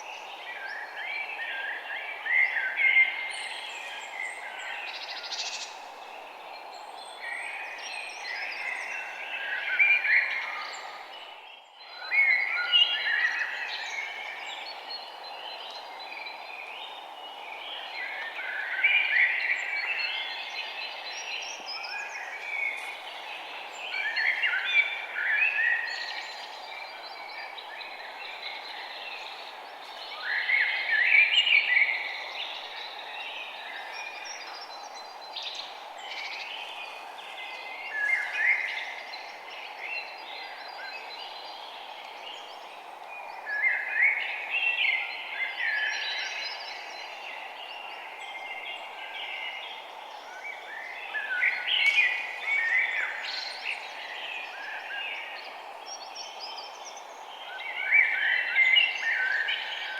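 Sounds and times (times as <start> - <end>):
songbirds chirping and singing: 0.0 - 59.9
steady background hiss: 0.0 - 59.9.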